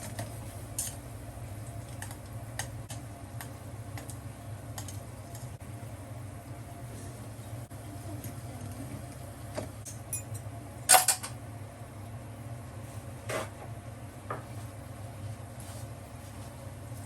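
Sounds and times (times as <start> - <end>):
utensils clinking on metal cookware: 0.0 - 1.1, 9.8 - 11.4
steady low hum: 0.0 - 17.0.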